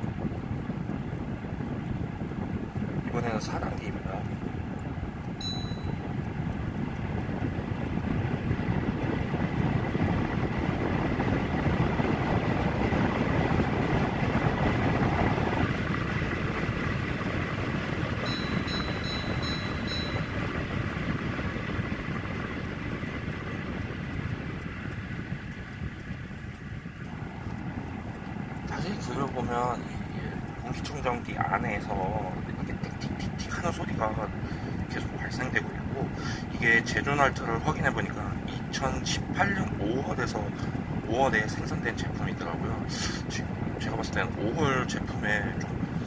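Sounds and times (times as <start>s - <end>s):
air purifier fan running: 0.0s - 46.0s
ticking inside fan unit: 0.0s - 46.0s
control panel beeps: 5.4s - 6.0s, 18.2s - 20.6s.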